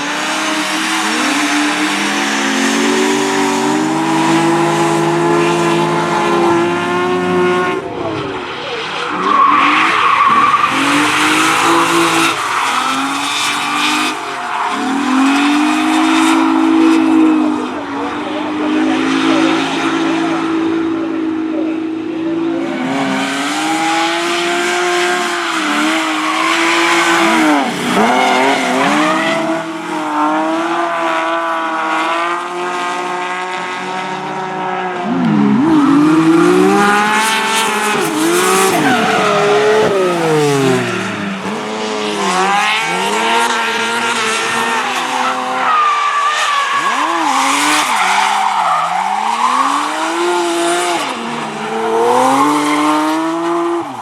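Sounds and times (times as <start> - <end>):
car engine revving hard: 0.0 - 54.0
tyres squealing: 35.6 - 41.7, 44.4 - 54.0.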